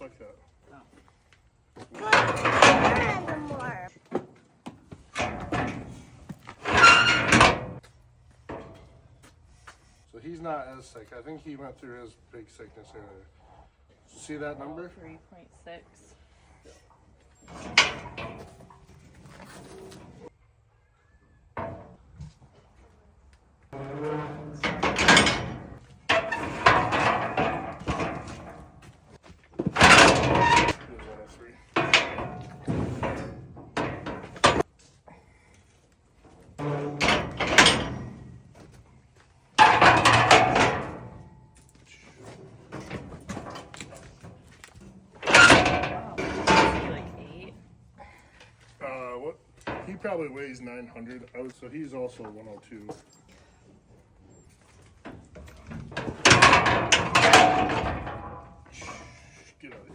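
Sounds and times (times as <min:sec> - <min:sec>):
clattering: 0:01.8 - 0:03.9, 0:05.2 - 0:07.8, 0:17.5 - 0:20.3, 0:23.8 - 0:34.7, 0:36.4 - 0:38.8, 0:39.6 - 0:41.7, 0:42.4 - 0:47.6, 0:49.6 - 0:50.0, 0:54.5 - 0:58.9.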